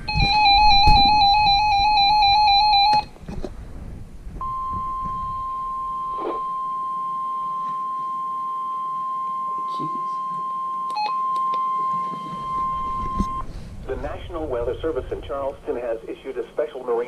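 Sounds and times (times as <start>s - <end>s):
steady single-pitch tone: 0.0s - 3.1s, 4.4s - 13.5s
warbling electronic alert tone: 0.0s - 3.1s, 4.4s - 8.3s.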